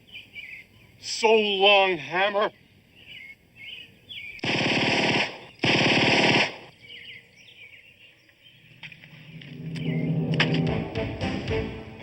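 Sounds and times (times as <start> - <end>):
faint birds chirping: 0.0 - 4.4, 6.6 - 10.7
automatic gunfire bursts: 4.4 - 6.8.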